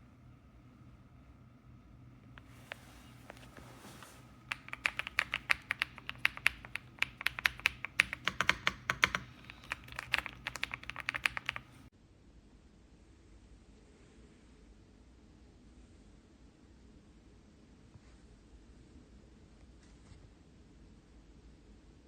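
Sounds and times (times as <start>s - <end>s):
mechanical keyboard typing: 4.4s - 11.9s.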